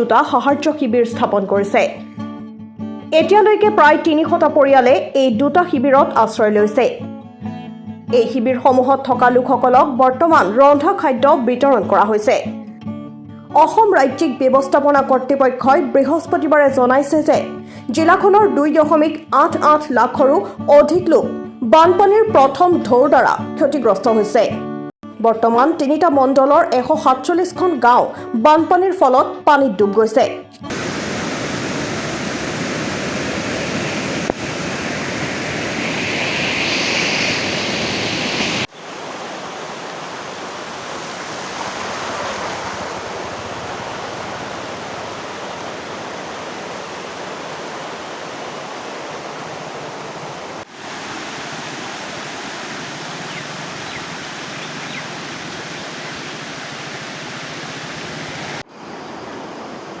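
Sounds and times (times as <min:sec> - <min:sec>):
rushing floodwater: 0:30.7 - 1:00.0.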